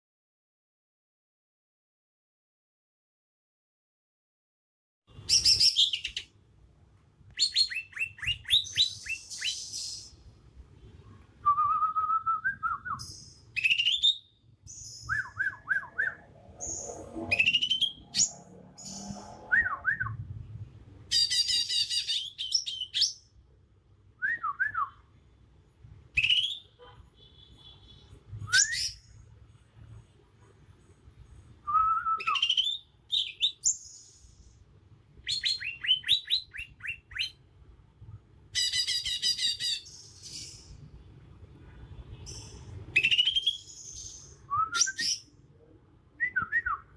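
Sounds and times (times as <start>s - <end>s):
bird singing whistles and trills: 7.4s - 10.1s, 11.4s - 20.2s, 21.1s - 23.2s, 24.2s - 25.0s, 26.2s - 26.7s, 28.4s - 29.1s, 31.6s - 34.1s, 35.2s - 37.4s, 42.3s - 45.3s, 46.2s - 46.9s.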